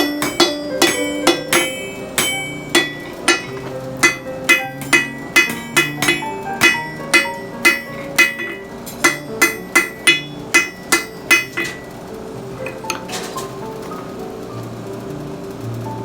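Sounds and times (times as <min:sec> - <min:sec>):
hammer ringing on anvil: 0:00.0 - 0:12.0
background music: 0:00.0 - 0:16.0.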